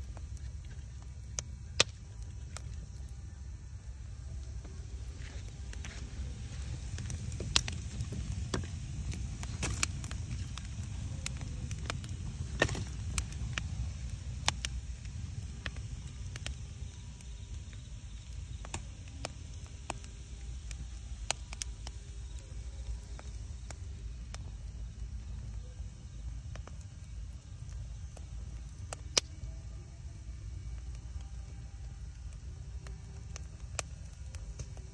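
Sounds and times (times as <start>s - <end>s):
wood fire crackling: 0.0s - 34.9s
low rumble: 2.2s - 16.9s.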